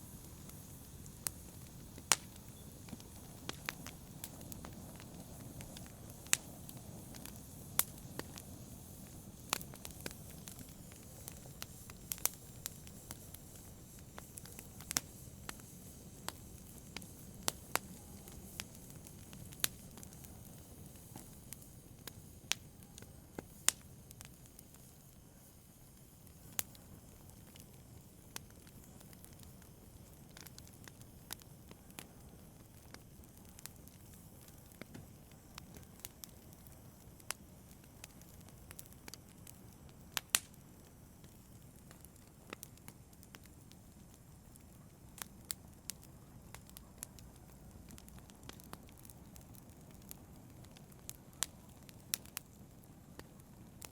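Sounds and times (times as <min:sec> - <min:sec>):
fire crackles and pops: 0:00.0 - 0:53.9
low rumble of flames: 0:00.0 - 0:53.9.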